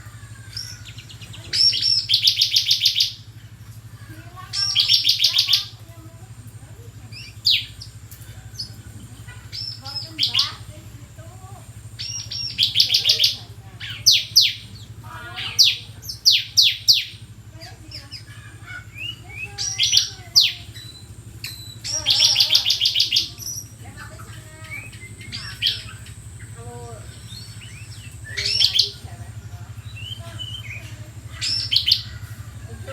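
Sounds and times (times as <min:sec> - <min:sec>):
bird singing rapid falling notes: 0:00.0 - 0:32.9
steady low hum: 0:00.0 - 0:32.9
soft bird chirps: 0:06.7 - 0:32.8.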